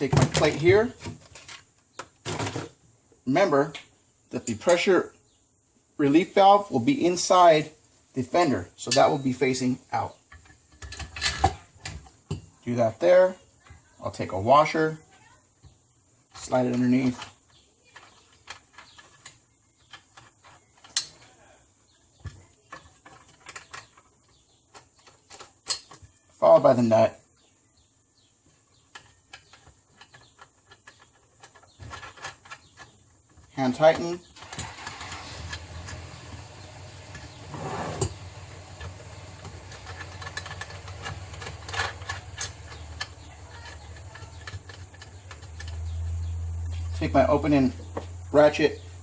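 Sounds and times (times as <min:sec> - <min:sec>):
metal hardware clicking and knocking: 0:10.1 - 0:12.6, 0:16.3 - 0:26.2, 0:28.7 - 0:36.3, 0:38.0 - 0:48.2.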